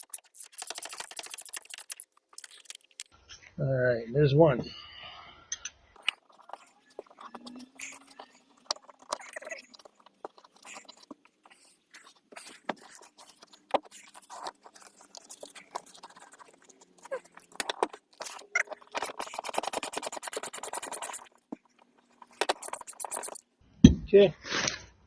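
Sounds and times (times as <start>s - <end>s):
fast ratchet clicks: 0.0s - 3.1s, 17.4s - 21.3s, 22.3s - 23.4s
wrench and bolt knocking and scraping: 17.4s - 23.4s.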